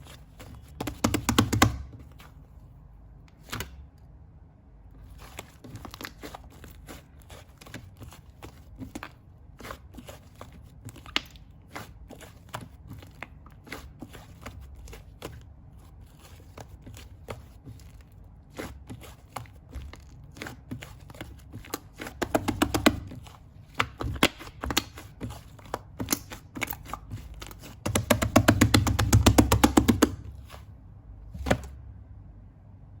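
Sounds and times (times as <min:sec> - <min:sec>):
slime squishing with sticky clicks: 0:05.0 - 0:30.6.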